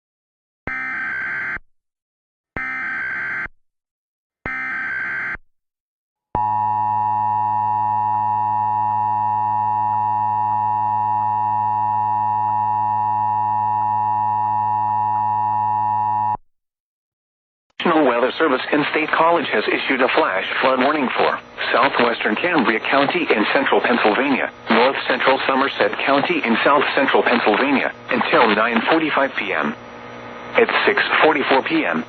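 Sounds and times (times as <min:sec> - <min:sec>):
steady loud attention tone: 0:17.8 - 0:32.0
digital data tone bursts: 0:18.6 - 0:29.8, 0:30.5 - 0:32.0.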